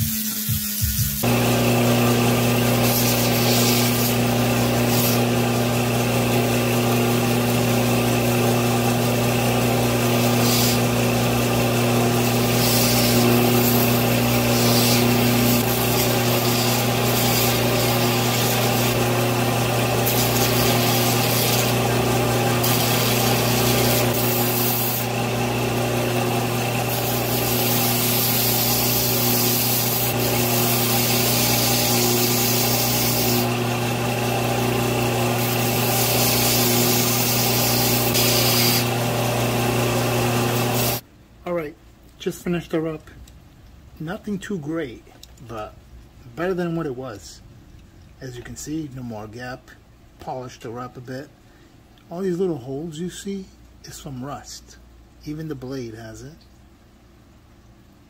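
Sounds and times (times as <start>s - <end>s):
metal rasping on abrasive: 0.0s - 7.9s, 9.6s - 33.6s, 35.0s - 39.0s, 40.2s - 41.0s
power tool motor hum: 0.0s - 41.0s.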